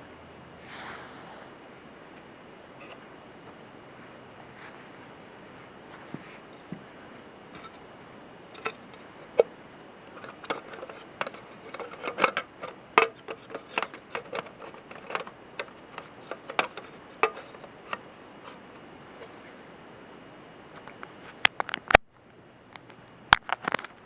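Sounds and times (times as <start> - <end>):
handling clicks and taps: 10.2 - 18.0.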